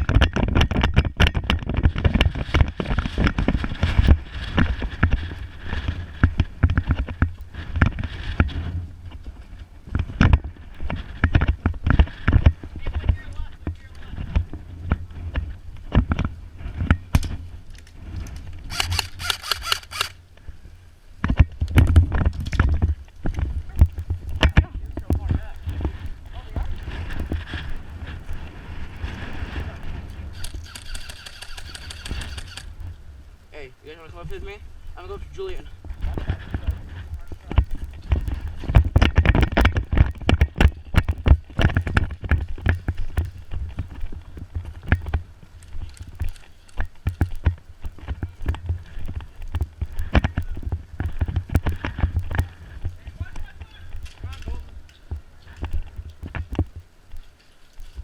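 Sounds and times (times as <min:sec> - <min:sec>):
gear knocking and rattling: 0:18.2 - 0:20.2, 0:30.4 - 0:32.7
airsoft guns firing: 0:18.7 - 0:20.2, 0:30.4 - 0:32.7
low rumble against microphone: 0:20.2 - 0:30.8, 0:31.7 - 0:58.0.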